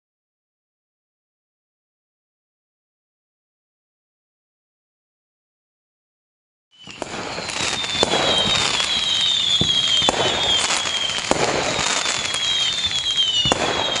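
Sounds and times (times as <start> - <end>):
fireworks whistling: 6.7 - 14.0
fireworks bangs: 6.8 - 14.0
fireworks crackling: 6.8 - 14.0.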